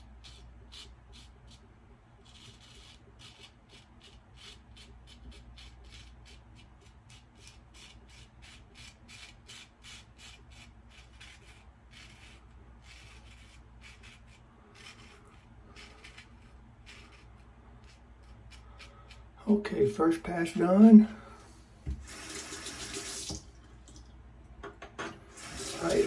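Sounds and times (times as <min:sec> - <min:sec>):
razor scraping stubble: 0:02.2 - 0:19.3, 0:25.4 - 0:26.0.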